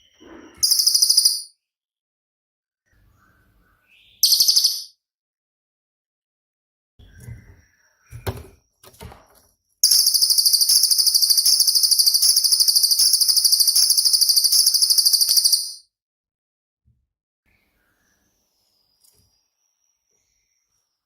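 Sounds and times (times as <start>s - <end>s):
songbird fast pulsing trill: 9.8s - 15.8s.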